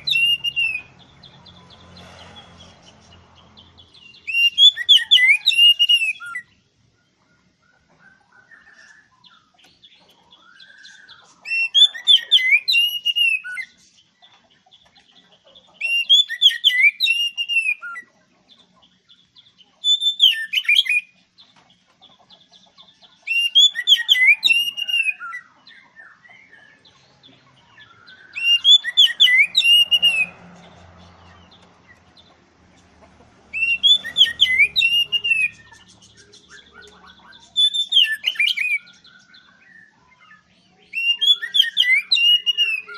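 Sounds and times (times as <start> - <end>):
bird whistled song: 0.0 - 1.4, 3.9 - 6.6, 7.6 - 13.8, 15.7 - 18.1, 19.2 - 21.5, 22.3 - 27.0, 27.7 - 30.4, 33.5 - 42.9
soft bird twittering: 0.0 - 42.9.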